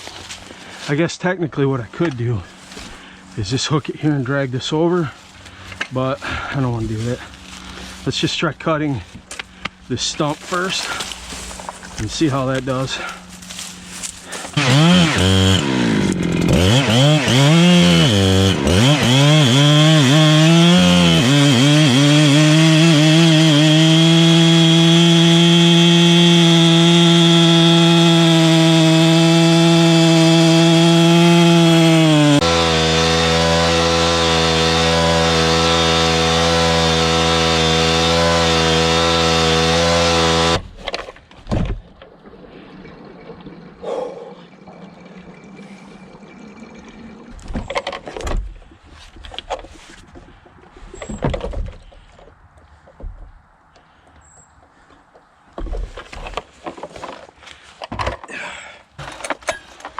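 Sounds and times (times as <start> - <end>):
chainsaw cutting at full throttle: 13.0 - 40.6
knocks and rustles: 47.4 - 53.4.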